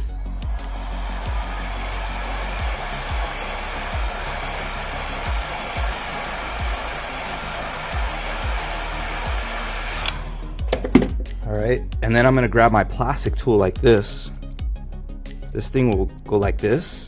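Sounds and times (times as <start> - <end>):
heat gun blowing air: 0.0 - 10.6.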